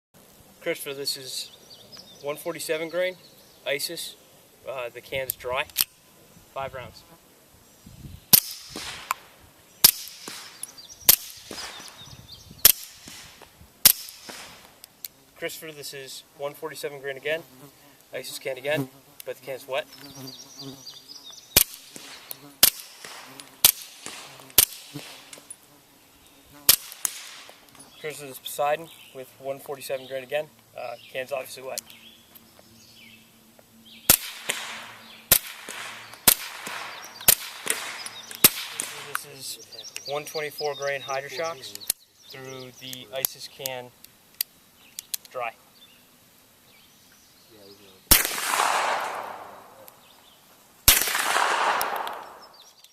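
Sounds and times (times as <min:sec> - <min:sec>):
suppressed gunshots: 0:08.3 - 0:12.0, 0:12.6 - 0:14.7, 0:21.6 - 0:25.4, 0:26.7 - 0:27.6, 0:34.1 - 0:39.4, 0:48.1 - 0:49.9, 0:50.8 - 0:52.7.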